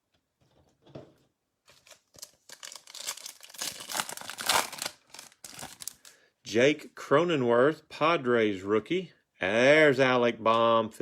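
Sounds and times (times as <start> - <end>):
foil wrapper crinkling: 1.7 - 6.2.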